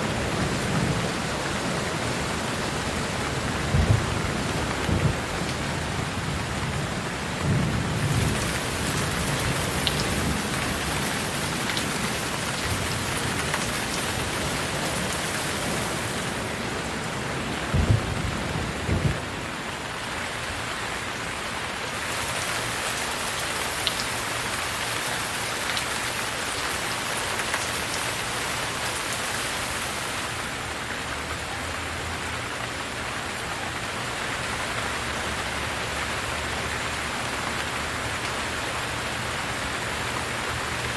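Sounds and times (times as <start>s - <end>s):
steady rain: 0.0s - 40.9s
thunder rumbles: 3.2s - 19.7s.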